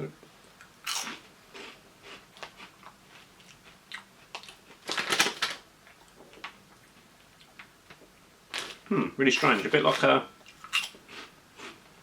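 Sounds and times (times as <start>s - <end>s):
person chewing crunchy snacks: 0.8s - 5.3s, 9.4s - 11.8s.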